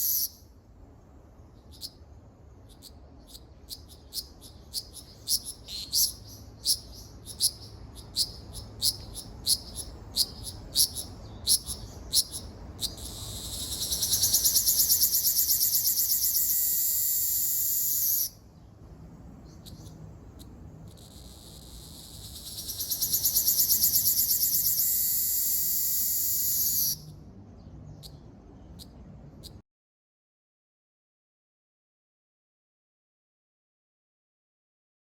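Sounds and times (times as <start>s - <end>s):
cicada chirping and buzzing: 0.0s - 0.6s, 1.6s - 27.2s.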